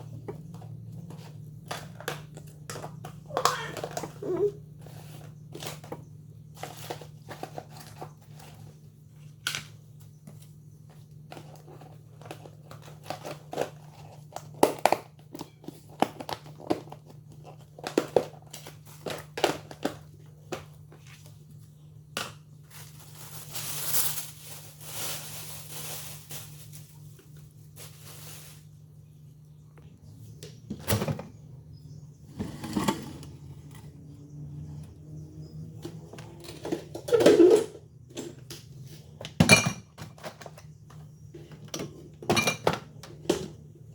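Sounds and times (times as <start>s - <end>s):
containers clicking and knocking: 0.0s - 4.6s
refrigerator low hum: 0.0s - 43.9s
plastic packaging crinkling: 22.6s - 28.9s.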